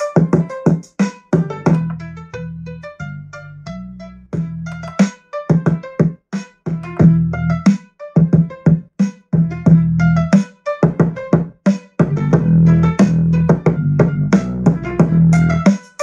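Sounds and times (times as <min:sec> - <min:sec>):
electronic music with heavy bass: 0:00.0 - 0:02.2, 0:06.7 - 0:07.6.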